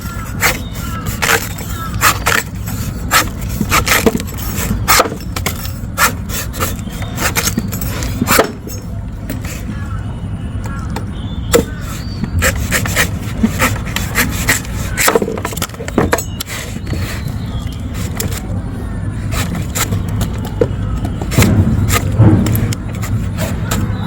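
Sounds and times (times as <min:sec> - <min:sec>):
knife chopping coconut husk: 0:00.1 - 0:08.8, 0:11.5 - 0:16.3.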